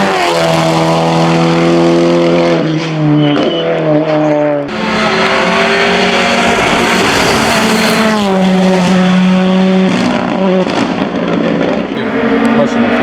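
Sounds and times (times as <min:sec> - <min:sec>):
race car engine at high revs: 0:00.0 - 0:13.0.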